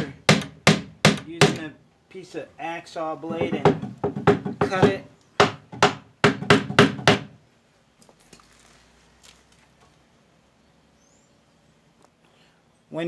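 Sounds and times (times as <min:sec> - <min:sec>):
hand tool knocking on wood: 0:00.0 - 0:01.7, 0:03.3 - 0:07.4.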